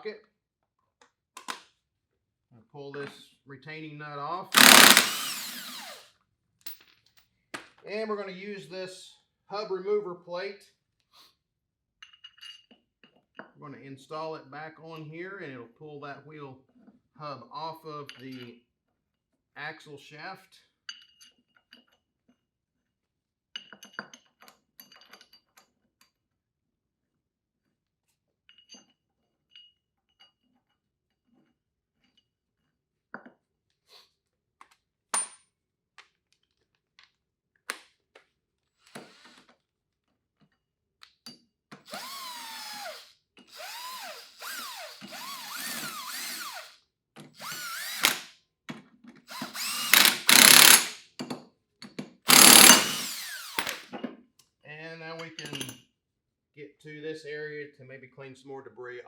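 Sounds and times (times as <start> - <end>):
power tool running under load: 4.6 - 6.0, 41.9 - 46.8, 47.4 - 48.3, 49.3 - 51.0, 52.3 - 53.8.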